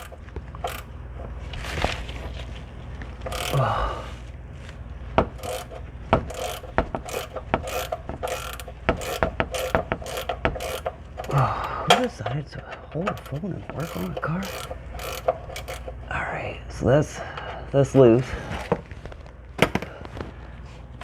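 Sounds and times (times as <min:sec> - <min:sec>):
socket ratchet clicking: 0:00.0 - 0:01.4, 0:03.2 - 0:03.7, 0:05.2 - 0:12.2, 0:12.9 - 0:16.1
handling noise: 0:00.0 - 0:16.2.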